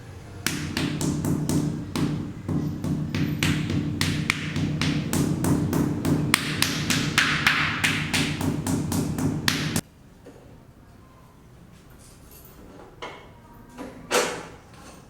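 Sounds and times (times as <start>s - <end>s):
rapid even knocks: 0.5s - 9.8s.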